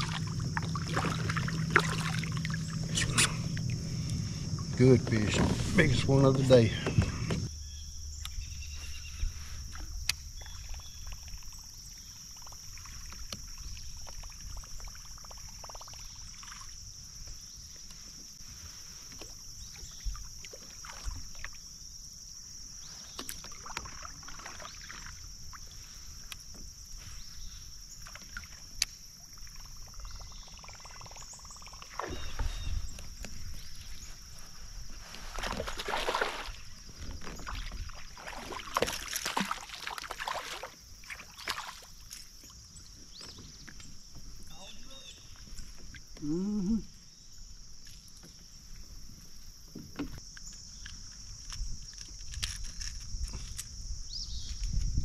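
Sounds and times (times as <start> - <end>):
high-pitched hum: 0.0 - 7.5
paddle splashing water: 0.0 - 7.5, 8.8 - 21.9, 22.8 - 46.1.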